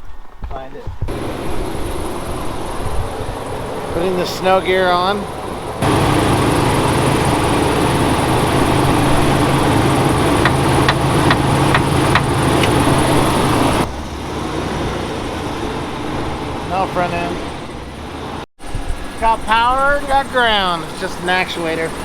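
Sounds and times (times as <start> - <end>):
truck engine running: 1.1 - 22.0.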